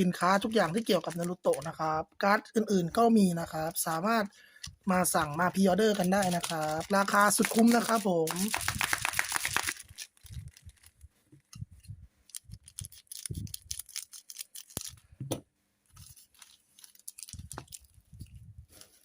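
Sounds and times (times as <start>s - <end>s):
scissors snipping packs: 12.3s - 15.0s.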